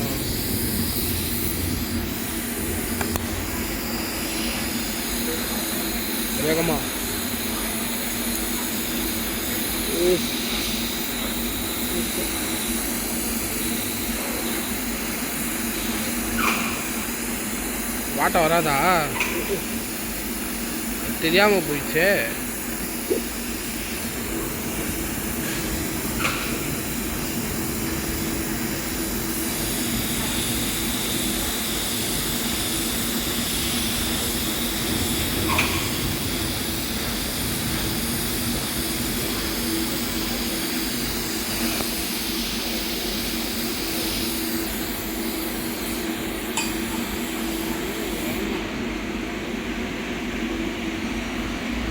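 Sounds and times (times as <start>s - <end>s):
welding hiss and hum: 0.0s - 51.9s.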